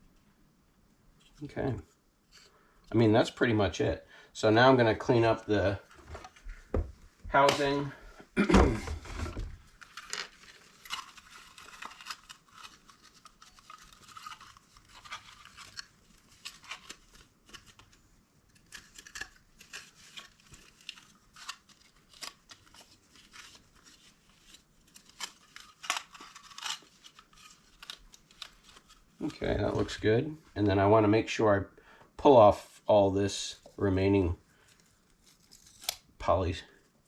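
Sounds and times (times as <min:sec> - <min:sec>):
scratching and scraping plastic: 0:08.9 - 0:17.9, 0:18.5 - 0:29.7.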